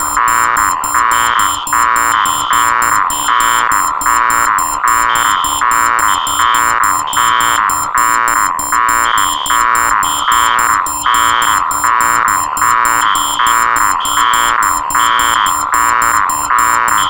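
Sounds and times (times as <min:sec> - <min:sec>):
harsh buzzing alarm tone: 0:00.0 - 0:17.0
high alarm beep: 0:00.0 - 0:17.0
rapid shrill beeping: 0:00.0 - 0:17.0.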